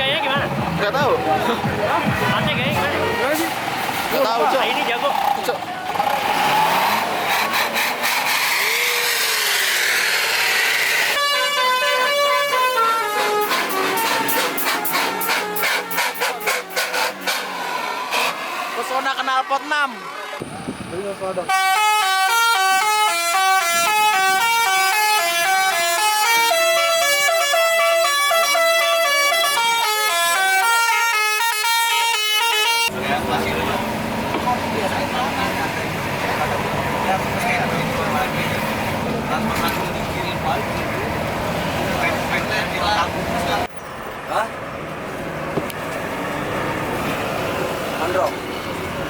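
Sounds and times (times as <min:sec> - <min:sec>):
loud raspy rushing noise: 0:00.6 - 0:11.2
multi-tone bus horn tune: 0:01.4 - 0:03.7, 0:10.7 - 0:18.3, 0:21.5 - 0:33.0.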